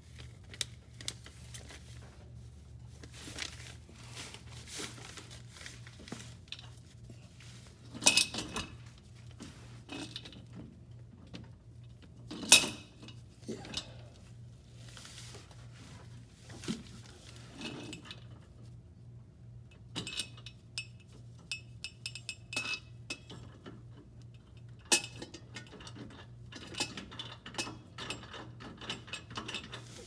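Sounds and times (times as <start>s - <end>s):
tools clinking on metal pipework: 7.9s - 8.8s, 12.3s - 14.2s, 20.0s - 29.8s.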